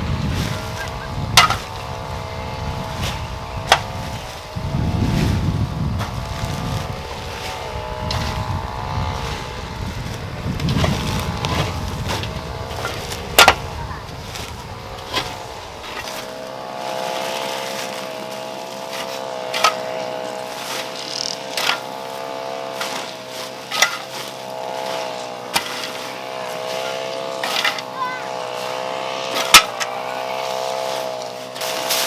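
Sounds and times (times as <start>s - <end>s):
steady pitched hum: 0.0s - 22.3s
sharp knocks: 1.4s - 1.7s.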